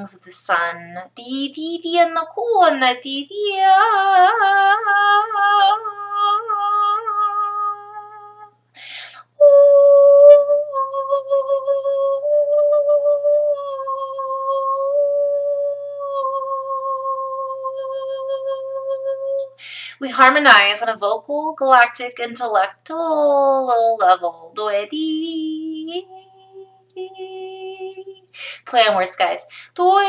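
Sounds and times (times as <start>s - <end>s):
woman breathing: 8.8s - 9.3s, 19.6s - 20.0s, 28.3s - 28.7s, 29.5s - 29.8s
woman humming: 9.3s - 19.6s, 25.1s - 28.4s
woman singing a wavering note: 9.3s - 19.6s, 24.6s - 28.2s.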